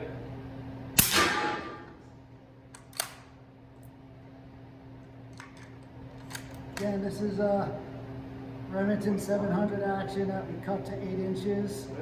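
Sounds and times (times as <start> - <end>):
suppressed rifle shot: 1.0 - 1.9.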